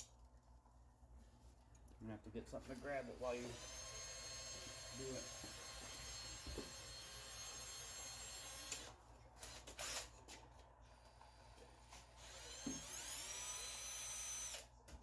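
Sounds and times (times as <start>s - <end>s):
electric drill motor whining: 3.2s - 10.2s, 11.0s - 14.7s.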